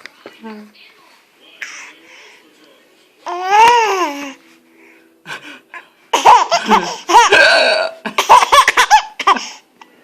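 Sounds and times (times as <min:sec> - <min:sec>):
baby laughing: 0:06.1 - 0:07.4, 0:08.1 - 0:09.6.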